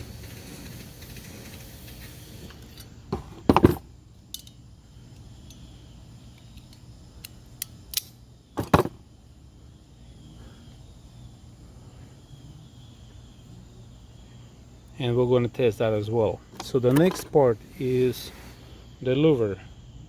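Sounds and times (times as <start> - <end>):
metallic clicks of hand tools: 4.3 - 4.6, 6.3 - 8.2.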